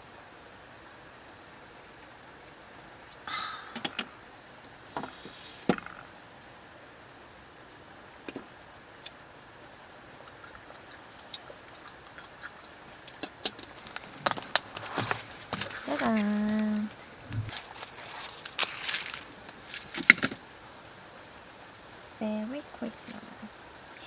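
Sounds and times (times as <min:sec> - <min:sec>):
faint hiss: 0:00.0 - 0:24.0
small objects clicking and knocking: 0:13.0 - 0:20.4
brief rustle: 0:13.9 - 0:20.4.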